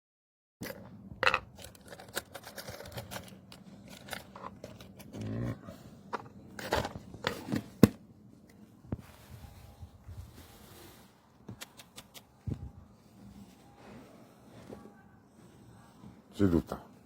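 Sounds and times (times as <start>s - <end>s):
sharp clicks and crackles: 11.5s - 12.3s.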